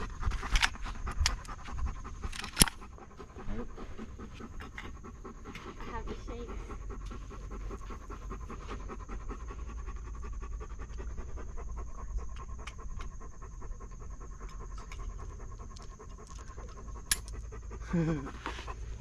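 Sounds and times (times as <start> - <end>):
dog panting: 0.0 - 19.0.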